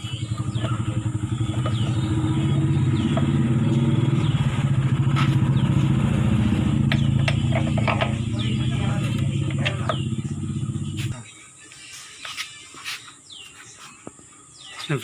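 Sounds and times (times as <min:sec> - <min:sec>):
motorcycle engine running: 0:00.0 - 0:11.2.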